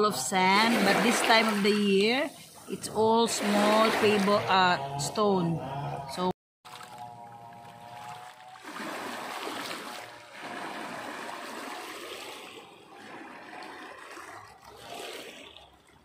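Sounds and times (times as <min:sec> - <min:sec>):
waves washing over pebbles: 0:00.3 - 0:04.4, 0:08.4 - 0:15.8.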